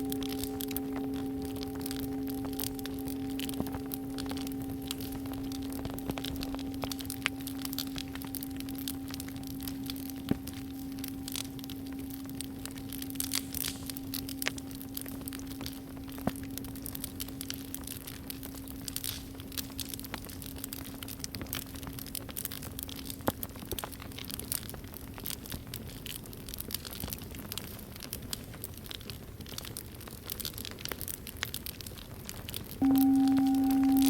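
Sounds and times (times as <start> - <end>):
singing bowl humming: 0.0 - 19.0, 32.8 - 34.0
campfire crackling and popping: 0.0 - 34.0.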